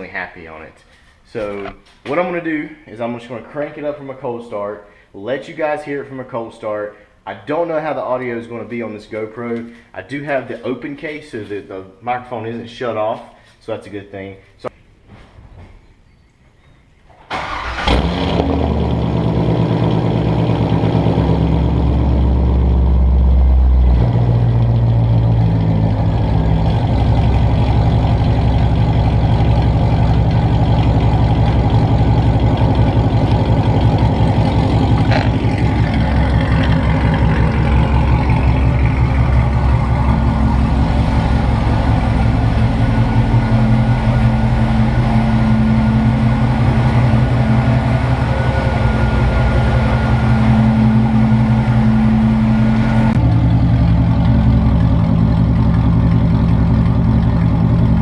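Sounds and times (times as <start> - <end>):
car engine running loud: 17.4 - 58.0.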